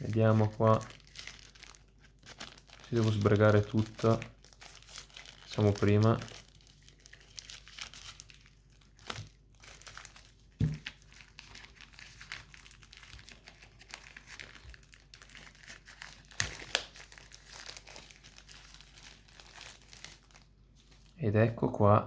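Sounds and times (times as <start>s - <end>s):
packaging crinkling: 0.0s - 21.2s.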